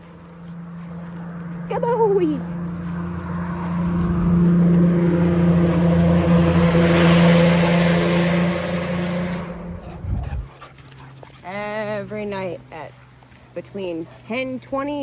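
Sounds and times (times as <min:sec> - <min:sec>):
car passing by: 0:00.0 - 0:11.4.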